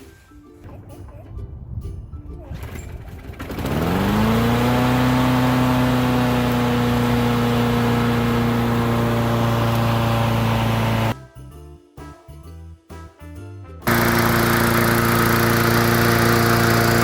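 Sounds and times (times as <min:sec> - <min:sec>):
lawn mower engine running: 0:02.6 - 0:11.2, 0:13.8 - 0:17.0.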